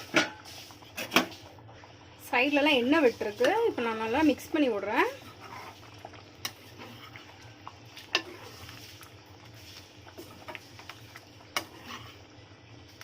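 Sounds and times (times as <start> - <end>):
metal spoon stirring in a pot: 2.5 - 12.4.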